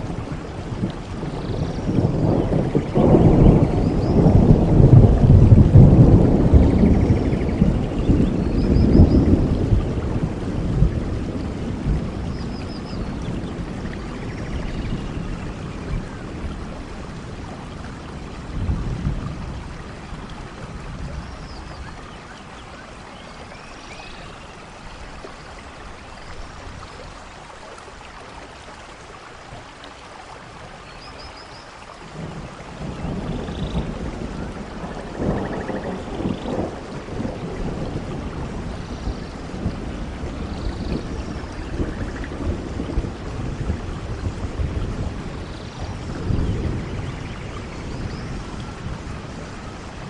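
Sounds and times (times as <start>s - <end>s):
rolling thunder: 0.0s - 22.0s, 32.1s - 50.0s
steady rain: 0.0s - 50.0s.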